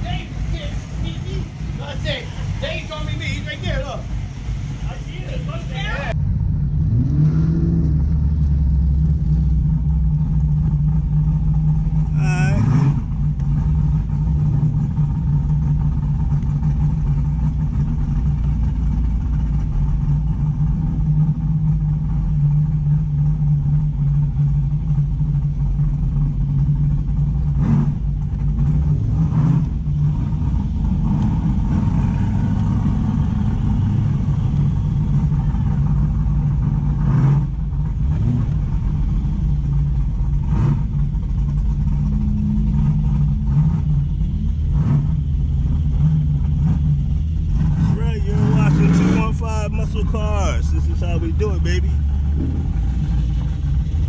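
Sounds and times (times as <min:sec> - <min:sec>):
car engine drone: 0:00.0 - 0:54.0
road noise: 0:00.0 - 0:54.0.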